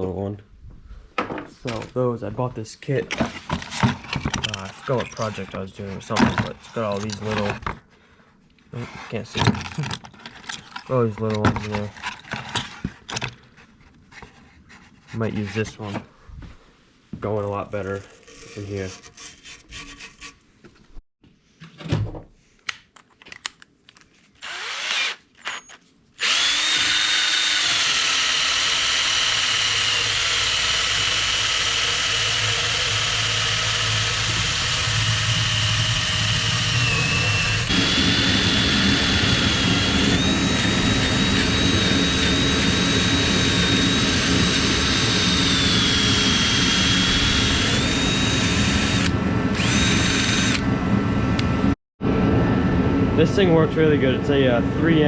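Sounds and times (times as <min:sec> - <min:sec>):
power drill whining: 0:24.4 - 0:50.8.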